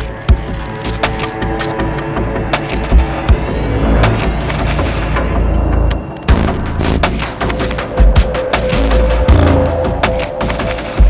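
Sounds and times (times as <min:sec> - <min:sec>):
music with heavy bass: 0:02.4 - 0:11.0.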